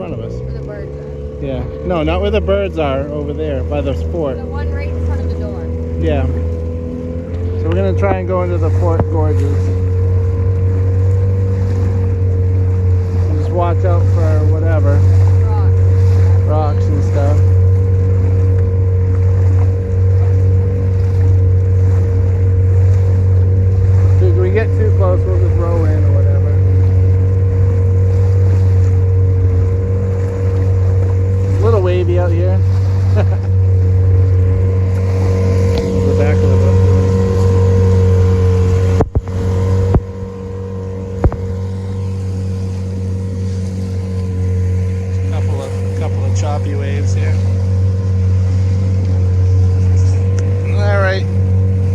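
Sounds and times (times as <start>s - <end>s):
motorboat engine humming: 0.0s - 51.9s
sharp clicks or knocks: 38.9s - 40.2s.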